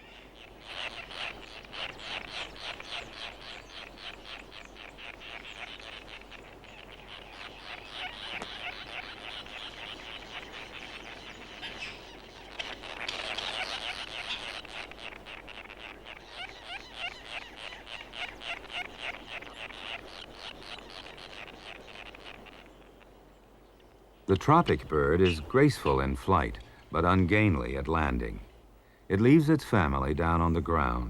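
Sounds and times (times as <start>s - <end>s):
tern colony chattering calls: 0.4s - 22.8s, 24.3s - 28.5s.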